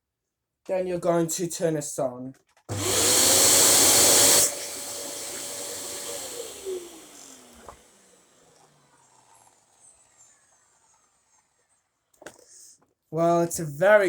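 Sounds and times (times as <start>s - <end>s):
vacuum cleaner air rush: 2.7s - 9.3s
vacuum motor whine: 2.7s - 10.8s.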